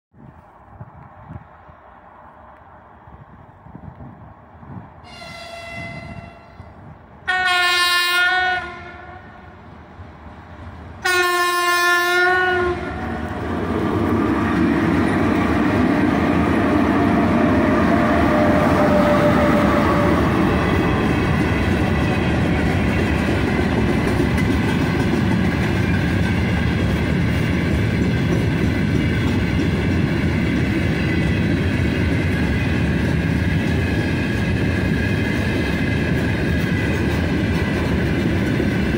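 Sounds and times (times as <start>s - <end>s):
freight train wheels rumbling: 0.2s - 38.9s
locomotive horn blasts: 5.1s - 9.5s, 11.0s - 13.0s.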